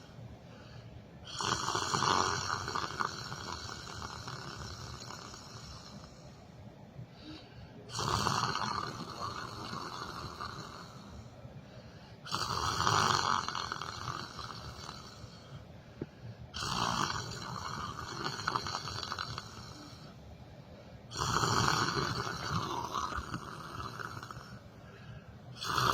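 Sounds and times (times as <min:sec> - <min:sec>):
quiet breathing: 0:00.0 - 0:07.9, 0:08.9 - 0:12.5, 0:13.6 - 0:25.9
person snoring: 0:01.3 - 0:06.3, 0:07.2 - 0:11.3, 0:12.2 - 0:15.6, 0:16.5 - 0:20.2, 0:21.1 - 0:24.6, 0:25.6 - 0:25.9.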